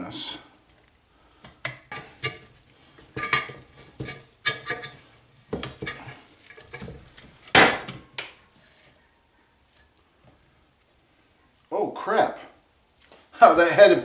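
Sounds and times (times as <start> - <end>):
metal tools clinking and scraping: 1.5 - 8.1.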